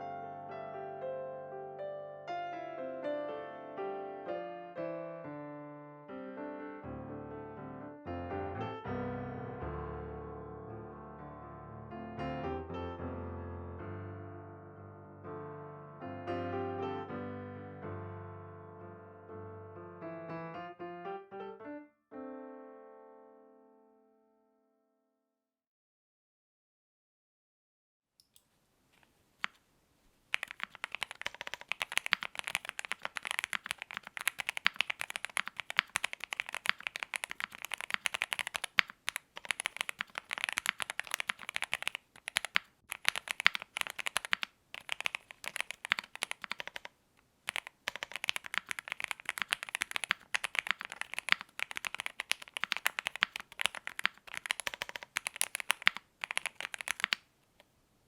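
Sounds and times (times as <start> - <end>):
mechanical keyboard typing: 30.3 - 57.3.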